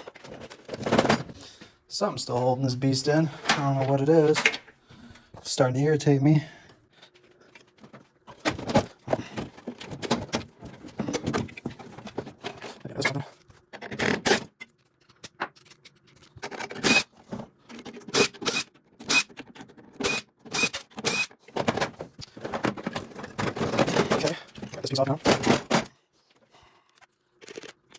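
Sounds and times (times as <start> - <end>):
metal tools clanking and rattling: 0.0 - 1.4, 3.4 - 4.7, 21.6 - 25.9.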